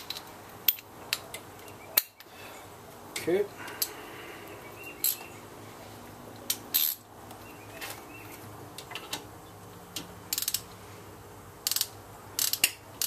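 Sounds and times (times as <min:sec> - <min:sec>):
ratchet clicking: 0:06.5 - 0:07.0, 0:10.3 - 0:10.7, 0:11.6 - 0:13.0.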